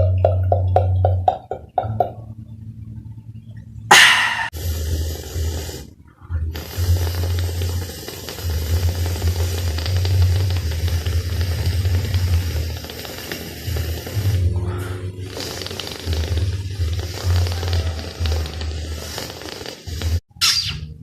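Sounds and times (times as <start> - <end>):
mouth animal imitation: 3.9 - 4.6.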